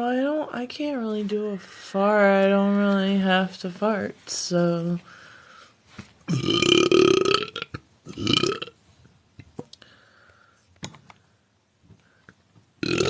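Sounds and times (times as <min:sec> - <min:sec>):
woman belching: 0:06.3 - 0:08.7.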